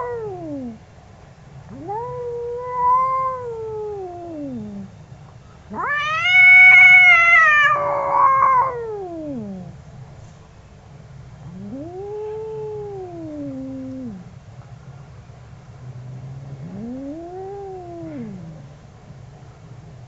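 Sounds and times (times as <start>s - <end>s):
angry cat yowling: 0.0s - 0.8s, 1.7s - 4.9s, 5.7s - 9.8s, 11.5s - 14.3s, 16.6s - 18.7s.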